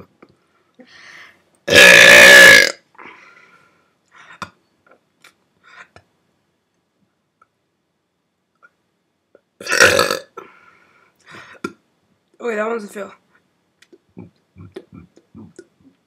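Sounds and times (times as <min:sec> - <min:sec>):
faint breaths: 0:00.4 - 0:01.6, 0:03.0 - 0:04.6, 0:10.4 - 0:11.7
person burping: 0:01.7 - 0:02.8, 0:09.6 - 0:10.5, 0:14.1 - 0:15.7
mouth clicks: 0:13.8 - 0:16.0.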